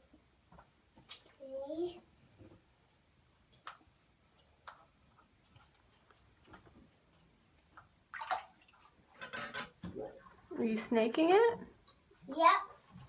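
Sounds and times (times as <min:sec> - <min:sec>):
faint clicks and light knocks: 0:03.4 - 0:08.0.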